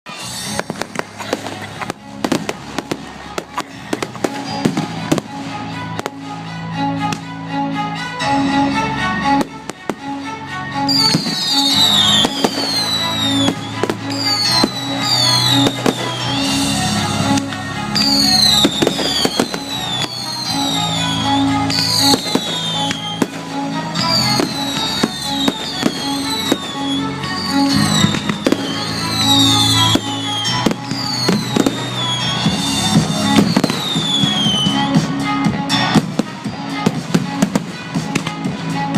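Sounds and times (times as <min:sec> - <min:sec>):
whistling firework shells: 0:00.1 - 0:01.5, 0:10.9 - 0:34.9
fireworks bangs: 0:00.1 - 0:06.2, 0:10.9 - 0:38.6
music: 0:00.1 - 0:38.9.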